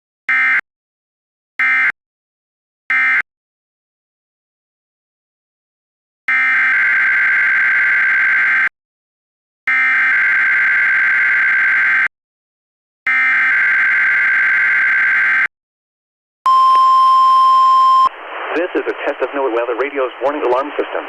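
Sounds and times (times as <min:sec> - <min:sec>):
steady alarm tone: 0:09.7 - 0:12.1, 0:13.1 - 0:15.5.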